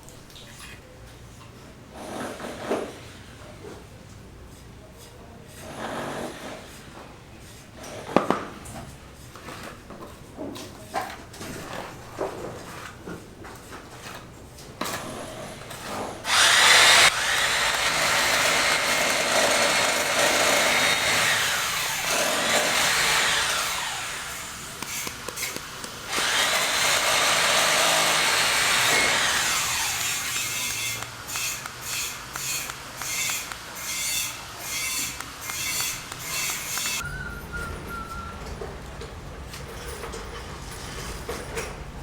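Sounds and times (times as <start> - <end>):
power tool motor whining: 16.2 - 37.0.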